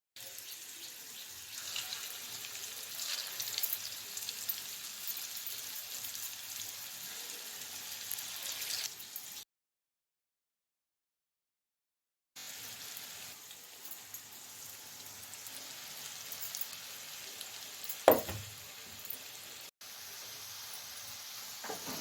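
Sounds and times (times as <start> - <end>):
food sizzling in hot oil: 0.2 - 9.4, 12.4 - 22.0.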